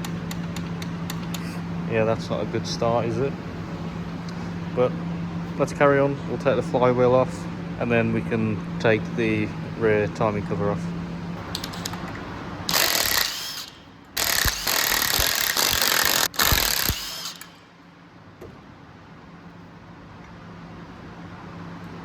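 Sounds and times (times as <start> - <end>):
impact wrench bursts: 12.7 - 17.8.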